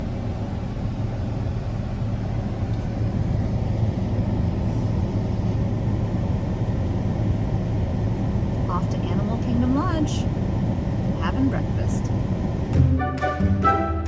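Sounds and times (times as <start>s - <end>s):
road vehicle engine and road noise: 0.0s - 14.0s.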